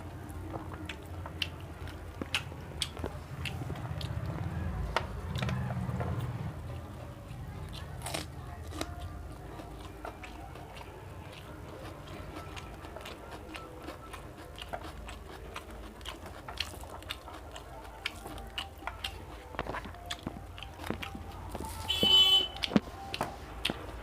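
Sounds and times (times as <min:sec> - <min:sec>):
person chewing food: 0:00.0 - 0:24.0
steady low hum: 0:00.0 - 0:24.0.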